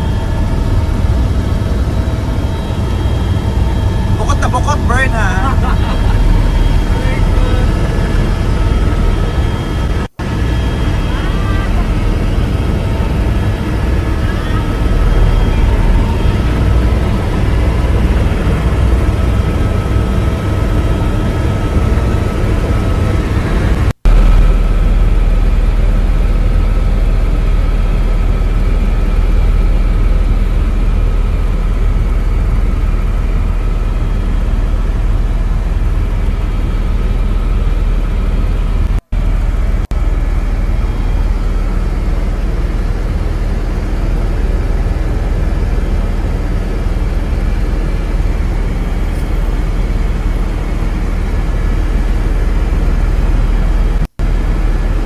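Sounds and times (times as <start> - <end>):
helicopter engine and rotor: 0.0 - 55.0.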